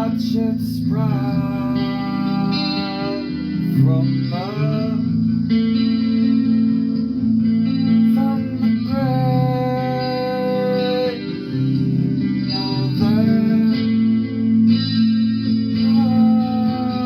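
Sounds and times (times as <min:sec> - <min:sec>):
person singing: 0:00.0 - 0:05.2, 0:07.9 - 0:14.6, 0:15.6 - 0:17.0
guitar playing: 0:00.0 - 0:17.0.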